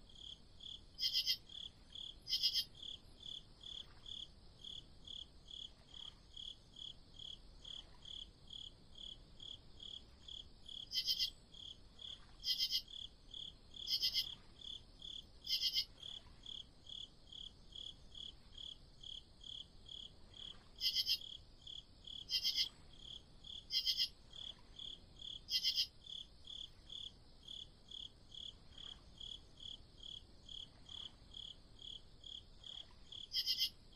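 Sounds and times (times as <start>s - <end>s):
crickets chirping: 0.0s - 33.9s.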